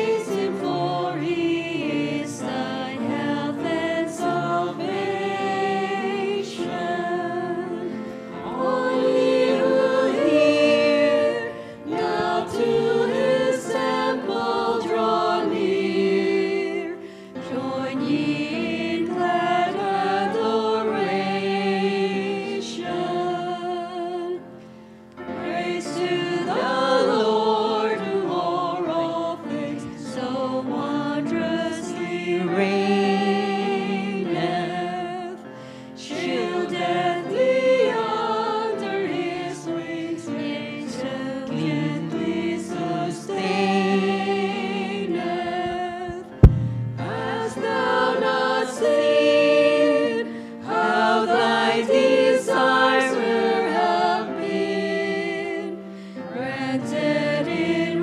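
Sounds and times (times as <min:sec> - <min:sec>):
choir singing: 0:00.0 - 0:24.5, 0:25.2 - 0:58.0
sharp click: 0:46.4 - 0:47.2.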